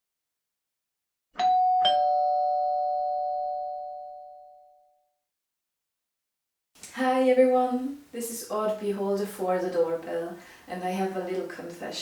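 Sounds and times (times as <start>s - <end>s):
two-tone doorbell chime: 1.4s - 5.0s.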